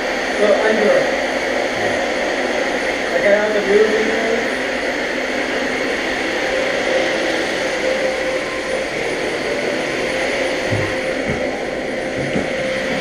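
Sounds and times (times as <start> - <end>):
vacuum cleaner running: 0.0 - 13.0.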